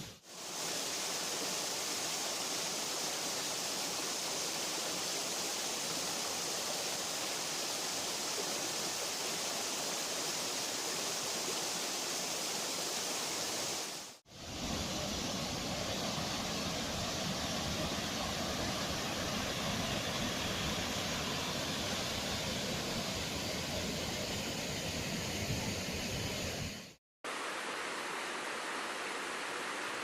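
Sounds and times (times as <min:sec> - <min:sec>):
waterfall rushing: 0:27.3 - 0:30.0.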